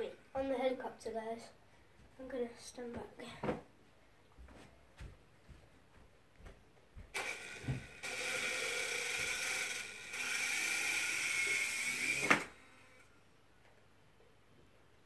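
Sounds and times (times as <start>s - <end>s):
rc helicopter motor whining: 7.2s - 13.1s.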